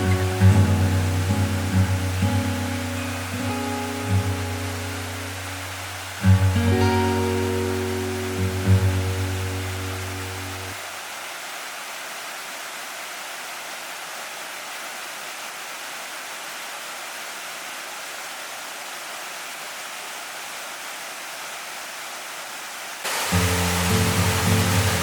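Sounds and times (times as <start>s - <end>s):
rushing water: 0.0s - 25.0s.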